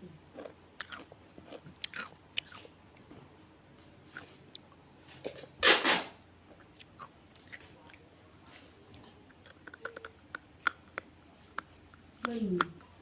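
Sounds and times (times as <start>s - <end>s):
loud crunch of eating: 0.4s - 2.7s, 6.6s - 8.7s
chewing clicks and smacks: 0.4s - 3.1s, 6.6s - 12.9s.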